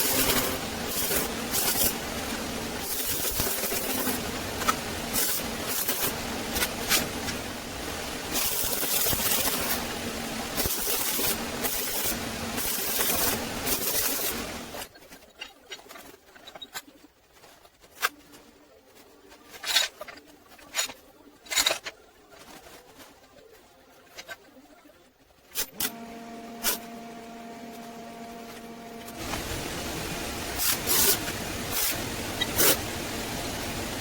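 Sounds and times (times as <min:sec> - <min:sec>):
loud steady hiss with clicks: 0:00.0 - 0:15.5, 0:25.4 - 0:34.0.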